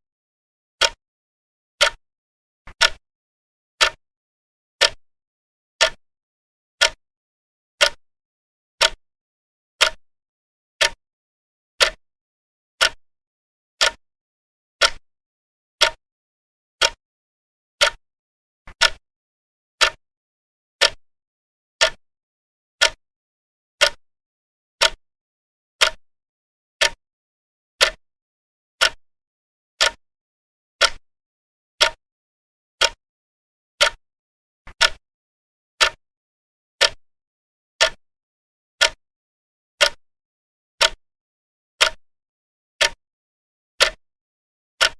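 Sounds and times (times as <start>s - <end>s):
clock ticking: 0.8s - 1.0s, 1.8s - 2.0s, 2.7s - 3.0s, 3.8s - 4.0s, 4.8s - 5.0s, 5.8s - 6.0s, 6.8s - 7.0s, 7.8s - 8.0s, 8.8s - 9.0s, 9.8s - 10.0s, 10.8s - 11.0s, 11.8s - 12.0s, 12.8s - 13.0s, 13.8s - 14.0s, 14.8s - 15.0s, 15.8s - 16.0s, 16.8s - 17.0s, 17.8s - 18.0s, 18.7s - 19.0s, 19.8s - 20.0s, 20.8s - 21.0s, 21.8s - 22.0s, 22.8s - 23.0s, 23.8s - 24.0s, 24.8s - 25.0s, 25.8s - 26.0s, 26.8s - 27.0s, 27.8s - 28.0s, 28.8s - 29.0s, 29.8s - 30.0s, 30.8s - 31.0s, 31.8s - 32.0s, 32.8s - 33.0s, 33.8s - 34.0s, 34.7s - 35.0s, 35.8s - 36.0s, 36.8s - 37.0s, 37.8s - 38.0s, 38.8s - 39.0s, 39.8s - 40.0s, 40.8s - 41.0s, 41.8s - 42.0s, 42.8s - 43.0s, 43.8s - 44.0s.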